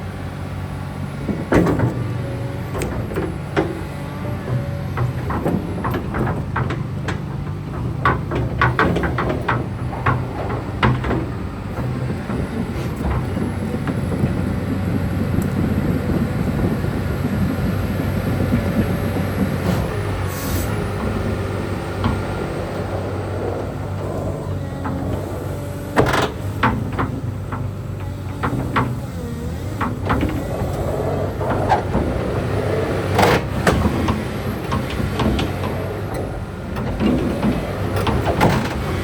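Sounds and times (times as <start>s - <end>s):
excavator diesel engine running: 0.0s - 39.0s.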